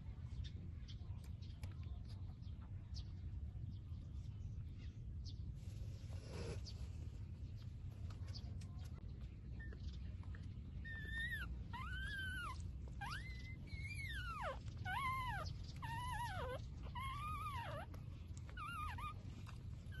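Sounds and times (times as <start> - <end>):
puppy whining: 10.7 - 20.0.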